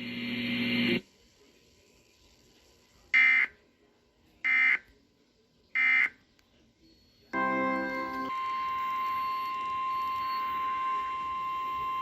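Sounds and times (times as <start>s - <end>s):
steady tone: 7.4s - 12.0s.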